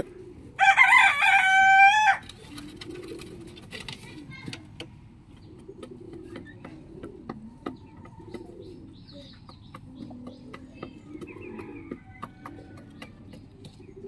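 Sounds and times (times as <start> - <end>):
chickens clucking: 0.0 - 14.0
rooster crowing: 0.6 - 2.2.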